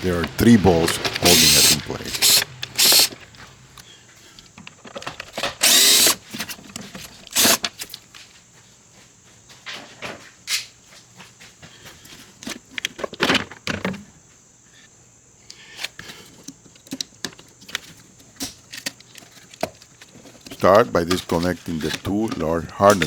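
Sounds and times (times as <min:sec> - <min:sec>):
scraping rattle: 0:00.0 - 0:03.8
plastic parts and tools clicking: 0:00.0 - 0:08.0, 0:15.8 - 0:23.0.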